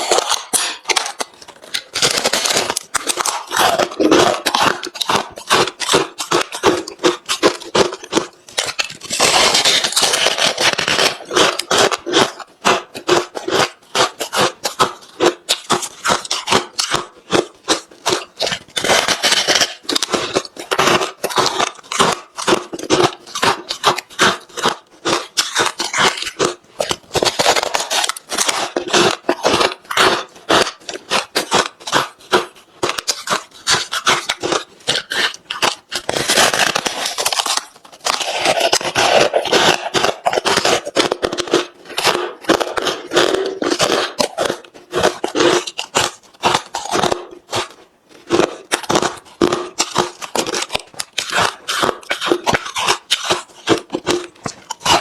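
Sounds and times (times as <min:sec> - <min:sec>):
ice crunching between teeth: 0:00.0 - 0:55.0.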